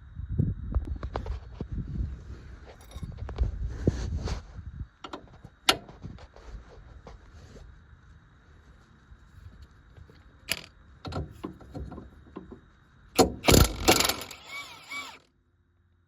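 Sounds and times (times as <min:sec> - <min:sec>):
tools clanking against metal: 0:10.5 - 0:12.5.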